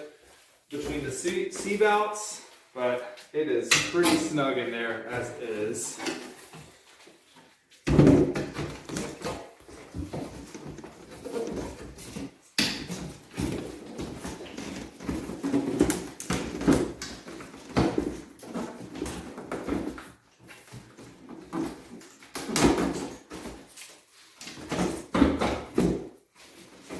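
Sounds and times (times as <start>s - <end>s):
padding rustling: 5.2s - 25.2s
thumps and knocks of packing: 7.8s - 26.9s.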